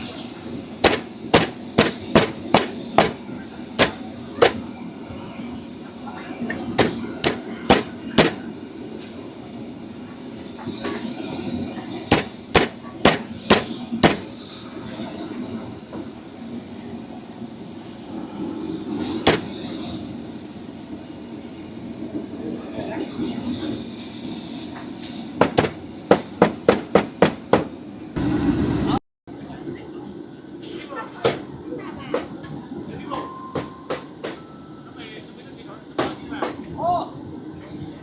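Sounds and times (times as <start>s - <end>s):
cleaver chopping on a block: 0.8s - 4.6s, 6.8s - 8.4s, 12.1s - 14.3s, 19.3s - 19.5s, 25.4s - 27.7s.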